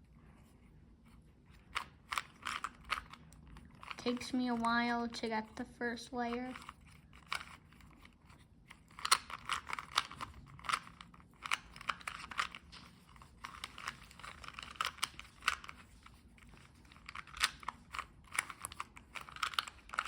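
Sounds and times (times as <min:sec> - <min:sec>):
puzzle cube layers clicking: 0:01.7 - 0:05.6, 0:06.2 - 0:20.0.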